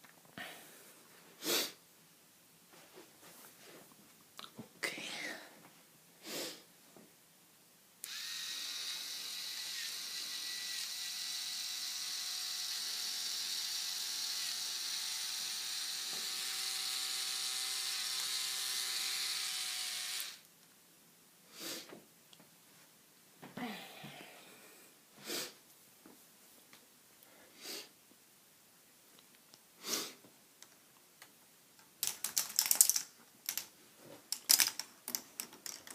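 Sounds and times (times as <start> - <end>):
small electric motor whining: 8.0 - 20.4.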